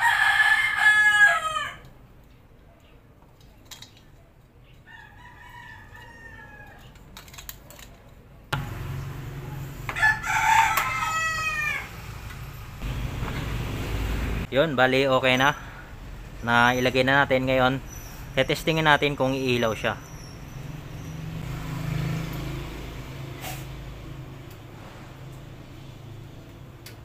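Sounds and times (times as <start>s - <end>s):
rooster crowing: 0.0s - 1.9s, 4.9s - 7.0s, 8.8s - 12.2s.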